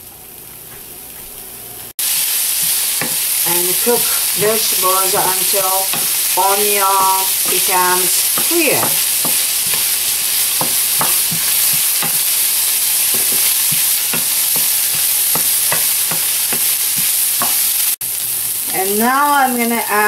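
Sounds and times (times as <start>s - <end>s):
vegetables sizzling in a frying pan: 0.2s - 20.0s
utensil scraping and knocking pan: 2.6s - 17.6s.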